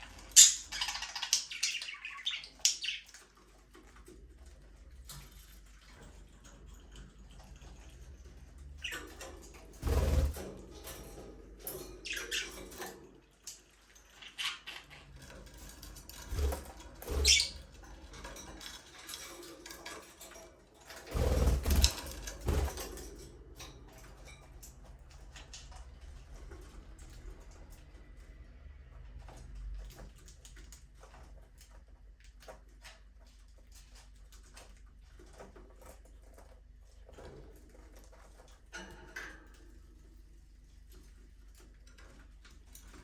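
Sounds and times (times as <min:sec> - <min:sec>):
budgerigars chirping: 0:00.2 - 0:03.1, 0:17.2 - 0:17.6.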